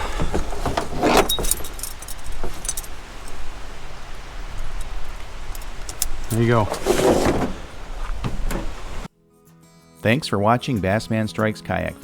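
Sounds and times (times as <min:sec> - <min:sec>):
metal lock clinking: 0:00.0 - 0:03.4.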